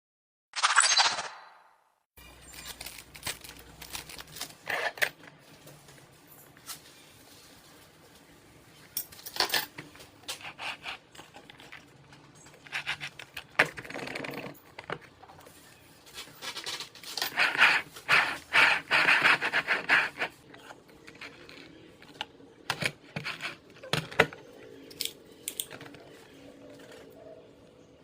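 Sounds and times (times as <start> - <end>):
plastic parts clicking and scraping: 2.5 - 5.4, 9.0 - 15.5, 16.1 - 27.1.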